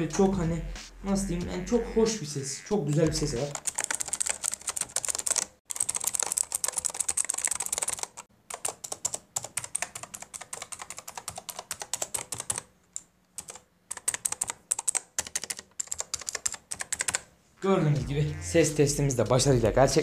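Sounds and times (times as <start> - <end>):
fast keyboard typing clicks: 2.9 - 17.3.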